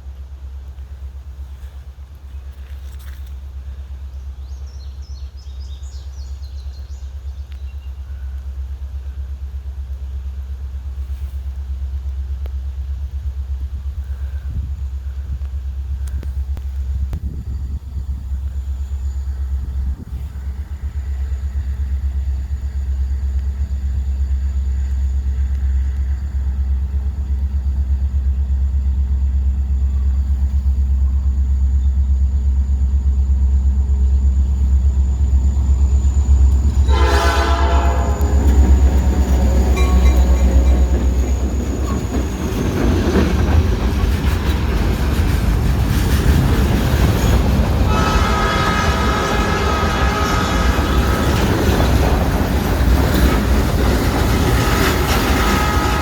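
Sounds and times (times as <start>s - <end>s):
diesel locomotive rumble: 0.0s - 56.0s
train wheels clacking on rails: 34.6s - 56.0s
train horn blast: 36.7s - 41.4s, 47.8s - 51.8s, 54.5s - 56.0s.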